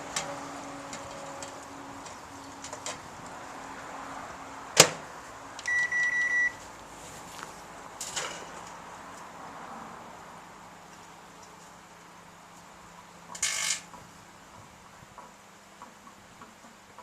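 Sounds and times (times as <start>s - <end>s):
keypad beeps: 5.7s - 6.6s.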